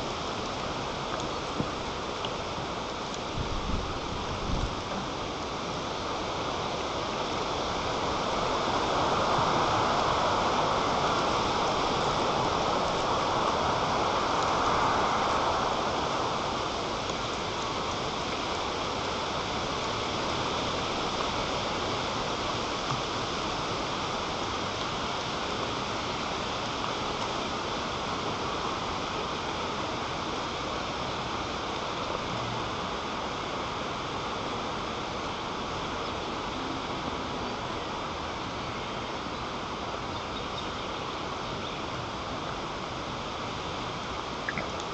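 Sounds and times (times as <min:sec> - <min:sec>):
strong wind gusting: 0:00.0 - 0:24.6.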